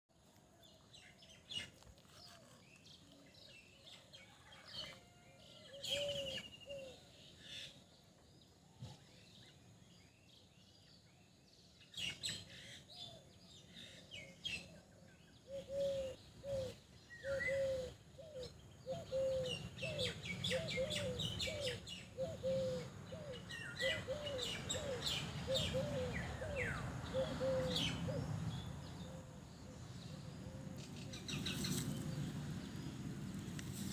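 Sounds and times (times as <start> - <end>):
repeated arched bird calls: 12.1 - 32.1
birds chirping: 15.4 - 33.9.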